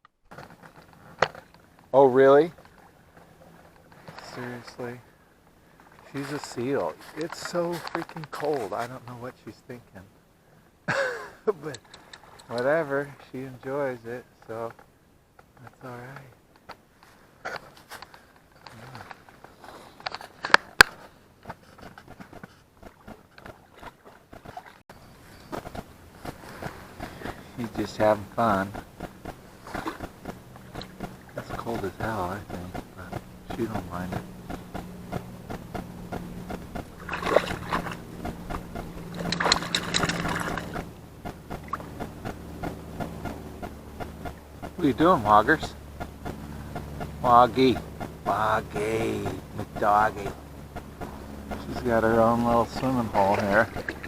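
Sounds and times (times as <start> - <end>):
steady low hum: 0.3 - 54.0
footsteps crunching on stones: 5.9 - 9.0
sharp clicks: 11.6 - 12.8
dog paddling in water: 21.5 - 35.2, 36.4 - 50.3, 51.1 - 54.0.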